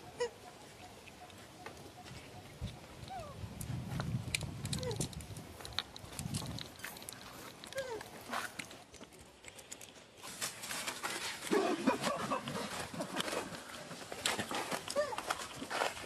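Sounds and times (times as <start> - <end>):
monkeys calling: 0.0 - 3.4
rustling and clicking: 1.1 - 16.0.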